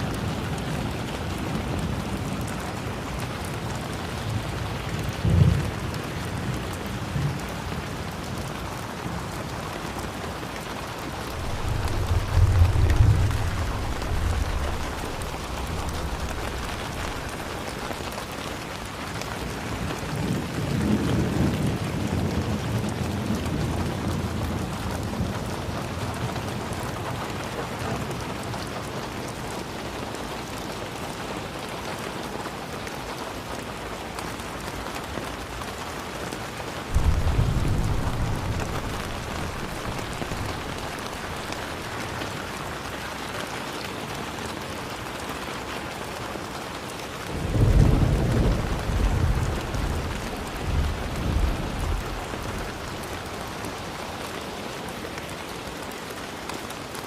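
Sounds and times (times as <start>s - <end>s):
steady rain falling: 0.0s - 57.0s
thunder rumbling: 11.1s - 18.1s, 36.8s - 42.6s, 47.3s - 53.8s
sharp thunder clap: 11.4s - 17.5s, 36.9s - 41.1s.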